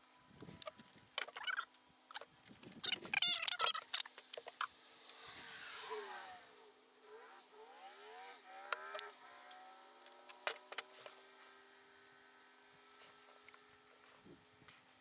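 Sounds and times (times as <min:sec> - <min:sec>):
motor vehicle passing by: 0:04.6 - 0:13.5
engine rising in pitch: 0:04.6 - 0:13.9.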